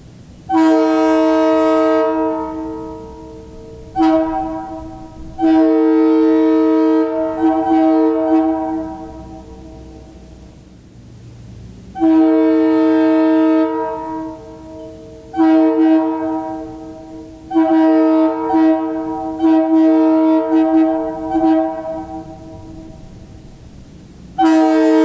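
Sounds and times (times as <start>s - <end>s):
two-chime air horn blasts: 0.5s - 10.4s, 12.0s - 23.8s, 24.4s - 25.0s.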